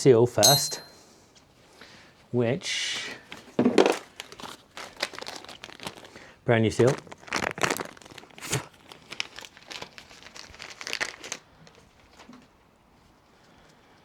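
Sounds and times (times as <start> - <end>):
plastic packaging crinkling and tearing: 3.9 - 12.4.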